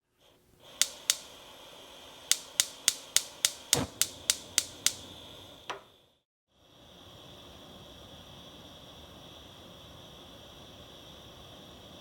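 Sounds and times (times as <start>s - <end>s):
gas hissing: 0.2s - 6.2s
stove spark igniter clicking: 0.6s - 5.9s
stove knob click: 0.8s - 1.4s, 2.3s - 5.1s
burner igniting with a whoosh: 2.3s - 5.7s.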